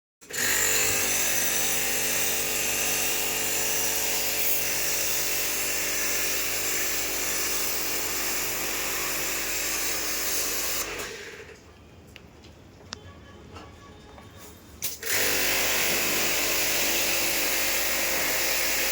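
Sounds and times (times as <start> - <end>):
electric power tool motor: 14.9 - 18.9.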